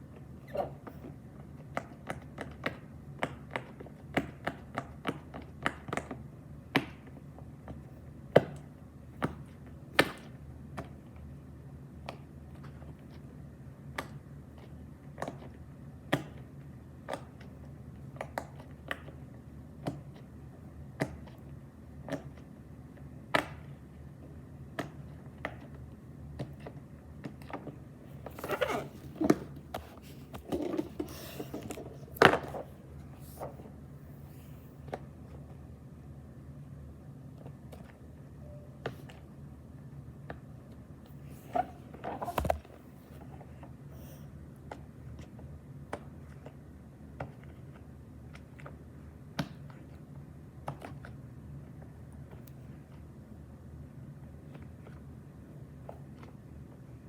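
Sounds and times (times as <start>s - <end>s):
rustling and rubbing: 28.1s - 34.4s, 41.2s - 43.4s.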